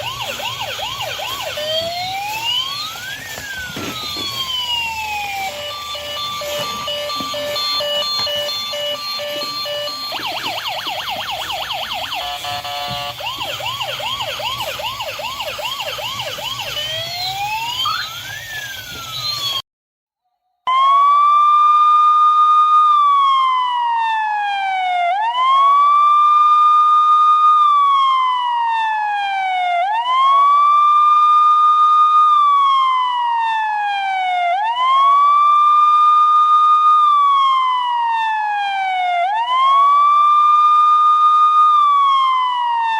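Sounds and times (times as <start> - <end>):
electronic siren: 0.0 - 19.6, 20.7 - 42.9.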